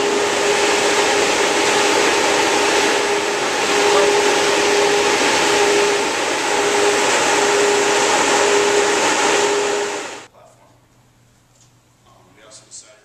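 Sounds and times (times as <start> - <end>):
electric fan blowing: 0.0 - 10.3.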